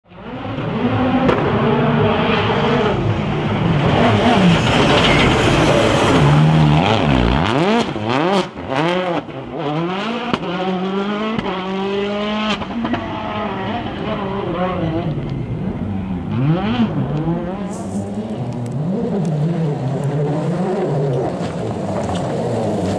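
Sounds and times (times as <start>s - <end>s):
rally car engine at high revs: 0.1s - 22.9s.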